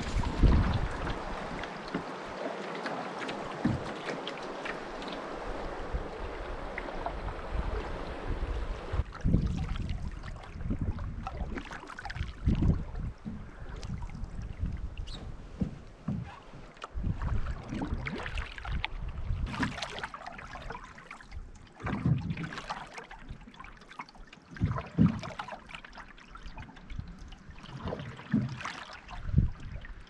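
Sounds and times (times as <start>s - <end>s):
wind rumble on microphone: 0.0s - 2.1s, 4.8s - 22.5s, 26.9s - 30.0s
paddle strokes in water: 0.0s - 30.0s.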